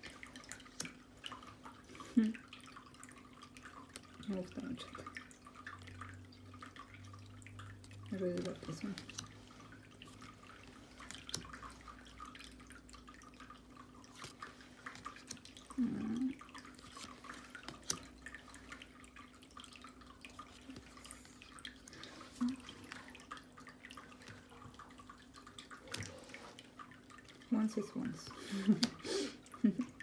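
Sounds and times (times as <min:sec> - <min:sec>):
cards clicking and tapping: 0:16.8 - 0:18.2.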